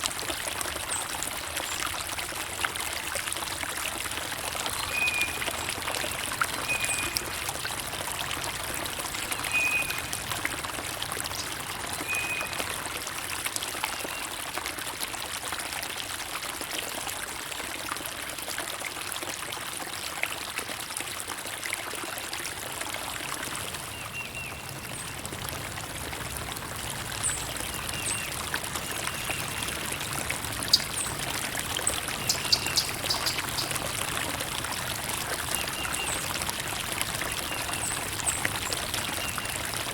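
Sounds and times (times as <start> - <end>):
water trickling and pouring: 0.0 - 39.9
bird calls: 30.7 - 31.2, 31.9 - 33.8.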